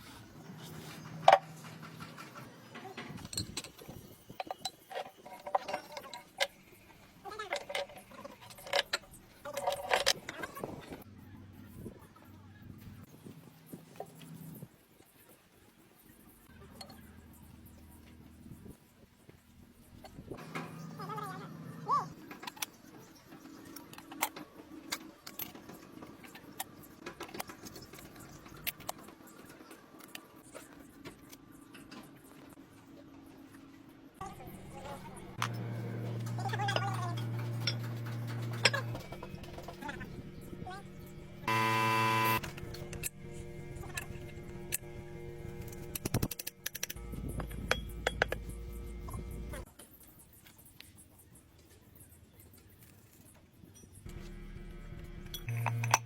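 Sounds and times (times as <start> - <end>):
metal tools clinking: 3.2 - 6.7, 36.2 - 39.9, 55.3 - 56.0
steady low hum: 34.2 - 49.7.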